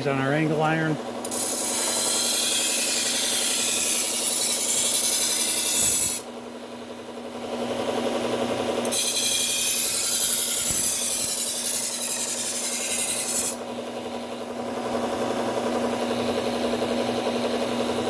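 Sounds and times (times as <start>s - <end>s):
belt sander humming: 0.0s - 6.4s
knife grinding on sander belt: 1.2s - 6.3s, 8.8s - 13.7s.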